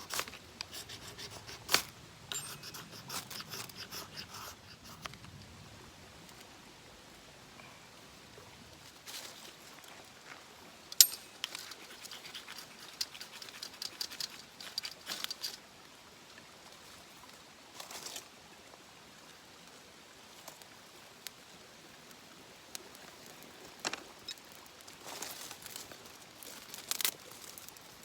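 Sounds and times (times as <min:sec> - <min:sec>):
rustling: 0:00.0 - 0:05.2, 0:11.0 - 0:15.6.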